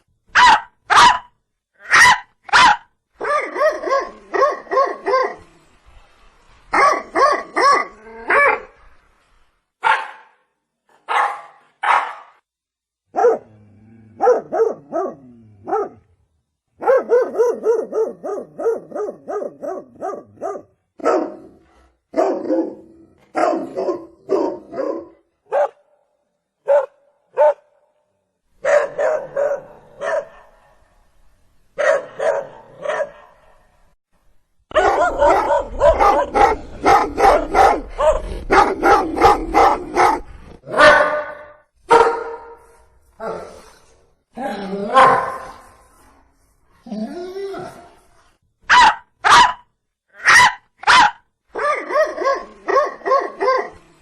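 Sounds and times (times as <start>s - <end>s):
dog barking: 0.3s - 5.4s, 6.7s - 8.7s, 9.8s - 12.4s, 13.1s - 13.5s, 14.2s - 16.0s, 16.8s - 21.5s, 22.1s - 25.9s, 26.6s - 27.8s, 28.6s - 30.8s, 31.8s - 33.7s, 34.7s - 42.6s, 44.9s - 45.6s, 48.7s - 53.8s.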